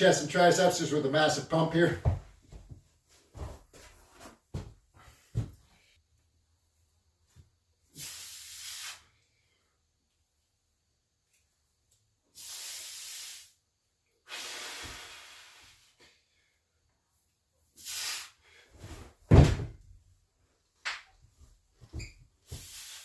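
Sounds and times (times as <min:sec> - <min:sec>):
hissing breaths through teeth: 0:07.9 - 0:09.3, 0:12.3 - 0:13.6, 0:14.2 - 0:16.2, 0:17.7 - 0:18.7, 0:22.4 - 0:23.0
heavy thud: 0:19.3 - 0:19.8.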